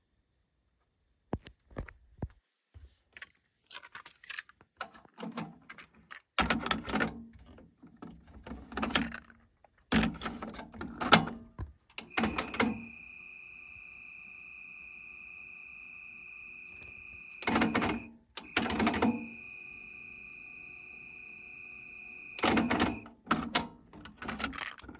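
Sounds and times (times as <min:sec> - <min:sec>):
cassette deck rattling clatter: 0:22.4 - 0:24.9.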